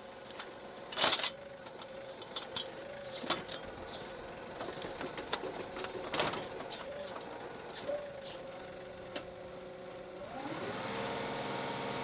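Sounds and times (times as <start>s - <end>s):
tractor running: 0.0s - 9.2s.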